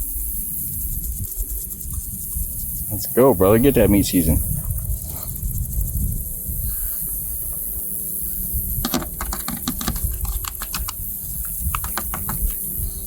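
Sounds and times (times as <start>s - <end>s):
low steady rumble: 0.0s - 13.0s
spice shaker clicking: 8.9s - 12.8s.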